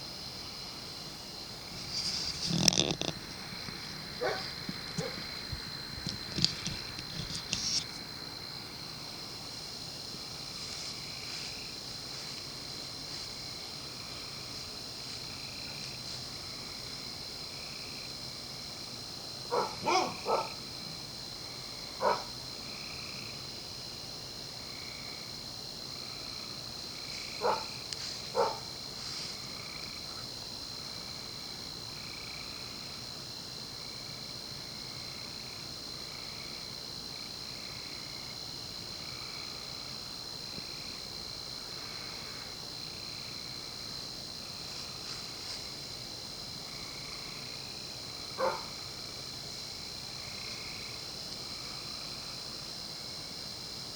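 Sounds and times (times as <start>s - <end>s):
crickets and insects chirping: 0.0s - 53.9s
dog barking: 4.2s - 5.2s, 19.5s - 20.6s, 22.0s - 22.3s, 27.4s - 28.7s, 48.4s - 48.7s.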